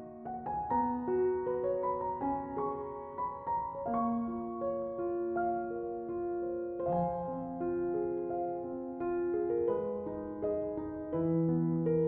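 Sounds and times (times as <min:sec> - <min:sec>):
soft piano melody: 0:00.0 - 0:12.0.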